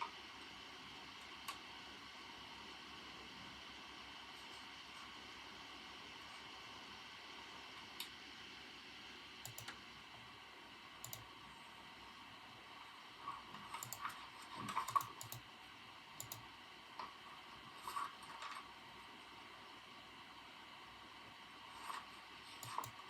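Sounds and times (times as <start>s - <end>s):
computer keyboard typing: 9.4s - 9.8s, 11.0s - 11.3s, 13.7s - 15.4s, 16.2s - 16.5s, 22.6s - 23.0s.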